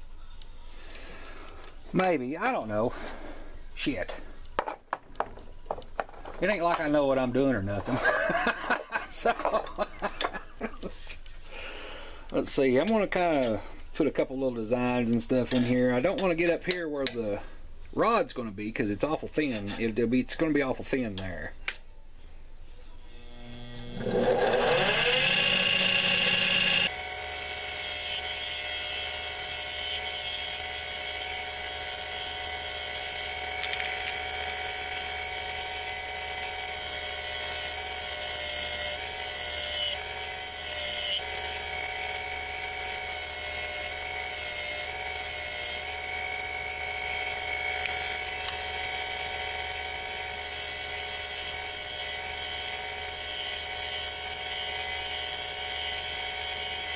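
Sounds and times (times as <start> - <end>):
lathe motor whining: 23.2 - 56.9.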